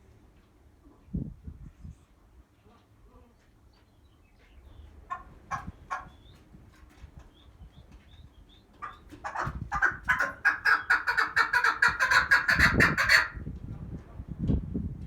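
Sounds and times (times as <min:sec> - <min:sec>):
partridge clucking calls: 0:04.7 - 0:13.4.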